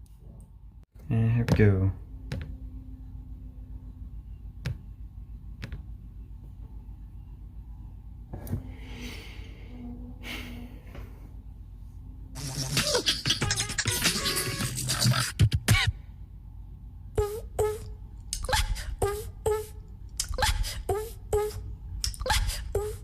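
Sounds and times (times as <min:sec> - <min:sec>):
low steady hum: 0:00.0 - 0:23.0
person beatboxing: 0:12.4 - 0:15.9, 0:18.4 - 0:23.0.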